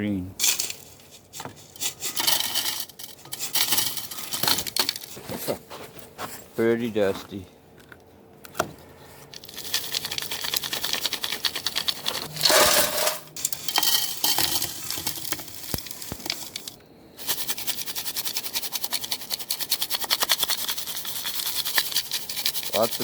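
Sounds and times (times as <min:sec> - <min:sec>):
gritty rattle of grains on mesh: 0:00.4 - 0:05.2, 0:09.4 - 0:23.0.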